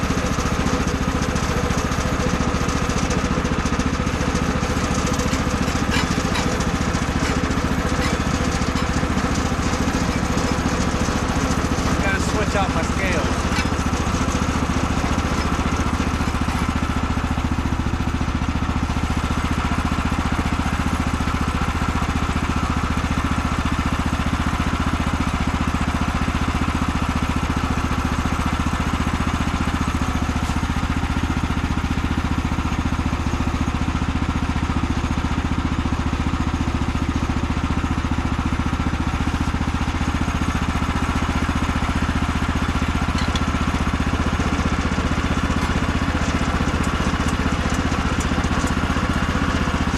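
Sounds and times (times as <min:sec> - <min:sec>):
small gasoline engine running: 0:00.0 - 0:49.9.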